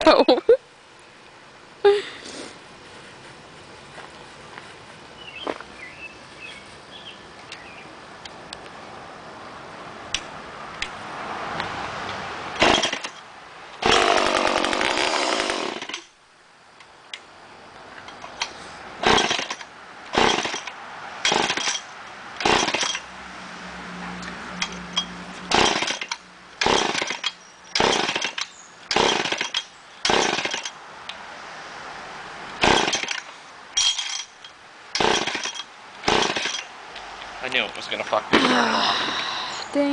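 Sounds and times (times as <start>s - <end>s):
chainsaw pull-start bursts: 12.6s - 13.1s, 13.8s - 16.1s, 19.0s - 21.8s, 22.4s - 23.0s, 25.5s - 30.7s, 32.6s - 33.2s, 35.0s - 36.7s
chainsaw engine running: 13.8s - 16.0s.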